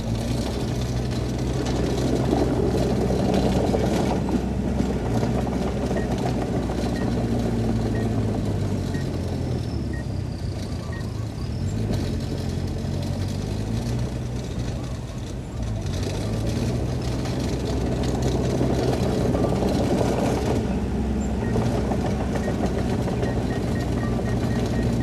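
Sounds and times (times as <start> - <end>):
heavy diesel machinery running: 0.0 - 25.0
faint high beep: 10.7 - 11.5, 22.4 - 25.0.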